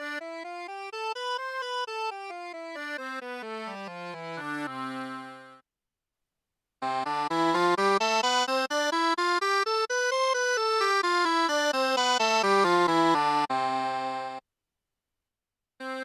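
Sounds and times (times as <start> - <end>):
sustained reedy accordion notes: 0.0 - 5.6, 6.8 - 14.4, 15.8 - 16.0
bright accordion quick run: 6.9 - 14.4.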